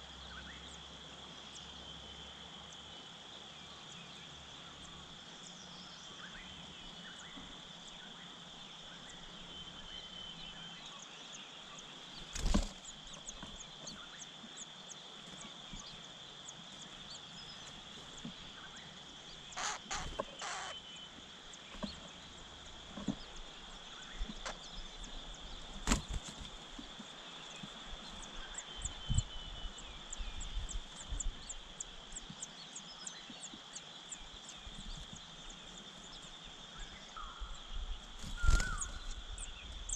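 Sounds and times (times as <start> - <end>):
insect drone: 0.0 - 39.9
small thumps and rustles: 12.2 - 13.6, 22.9 - 23.4, 25.8 - 26.9.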